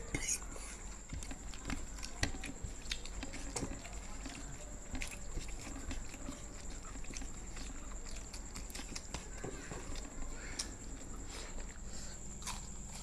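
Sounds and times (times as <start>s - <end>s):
chewing clicks and smacks: 0.9s - 13.0s.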